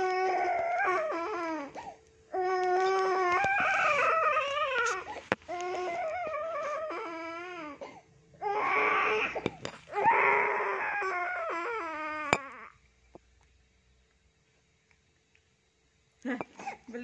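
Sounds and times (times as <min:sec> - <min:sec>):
baby crying: 0:00.0 - 0:12.7.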